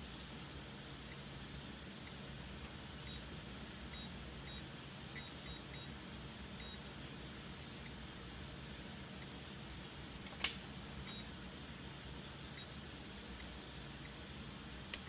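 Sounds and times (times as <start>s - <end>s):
low hum and hiss: 0.0s - 15.0s.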